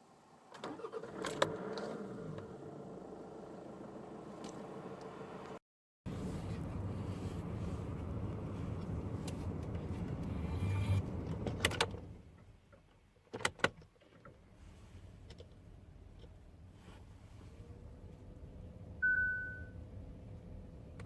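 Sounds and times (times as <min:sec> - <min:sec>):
car running: 0:00.7 - 0:12.3.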